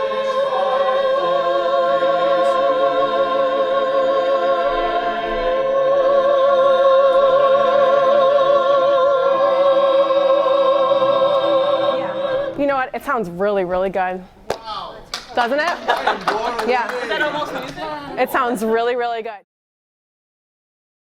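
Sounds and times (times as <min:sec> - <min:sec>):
mixed choir singing a chord: 0:00.0 - 0:12.6.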